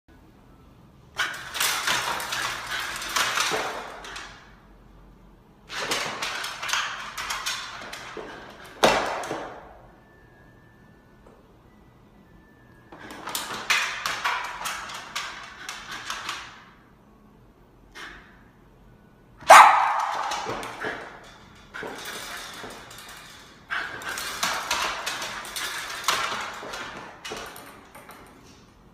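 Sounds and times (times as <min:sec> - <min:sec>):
puppy barking: 0:19.4 - 0:20.5.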